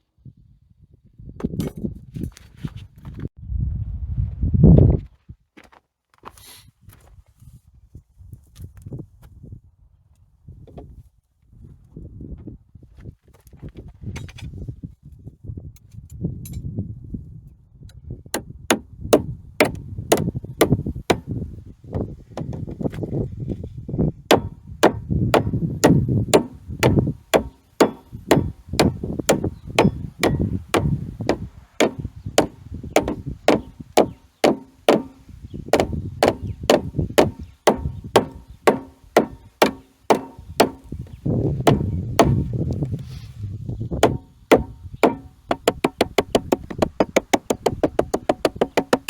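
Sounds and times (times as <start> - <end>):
hammer blows on wood: 18.4 - 22.6, 24.3 - 42.6, 44.0 - 49.0.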